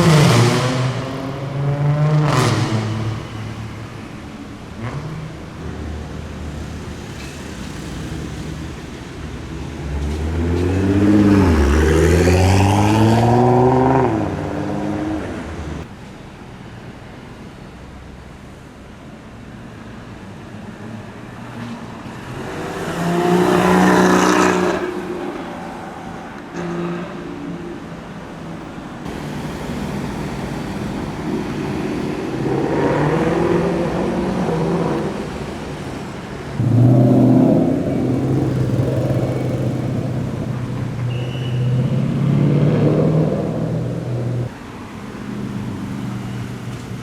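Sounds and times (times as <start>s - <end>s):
sports cars accelerating past: 0.0s - 15.9s, 21.8s - 27.8s, 29.0s - 44.6s.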